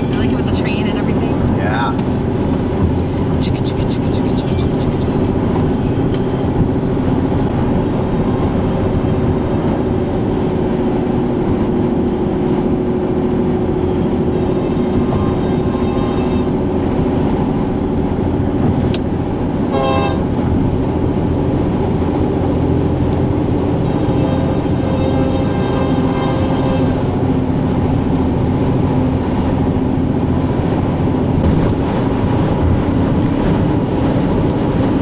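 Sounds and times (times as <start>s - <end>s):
freight train rumbling: 0.0s - 35.0s
vehicle noise: 0.0s - 35.0s
train horn blast: 13.7s - 17.9s, 19.7s - 20.4s, 23.6s - 27.7s.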